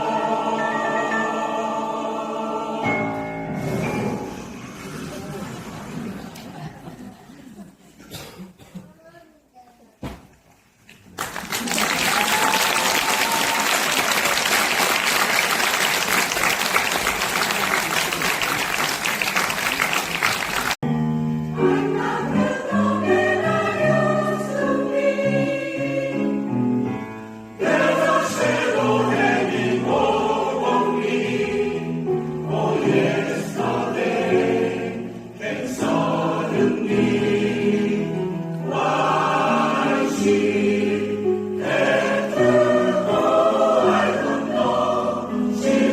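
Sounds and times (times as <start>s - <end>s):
choir singing with accompaniment: 0.0s - 7.2s, 21.5s - 45.9s
audience applause: 11.1s - 20.8s.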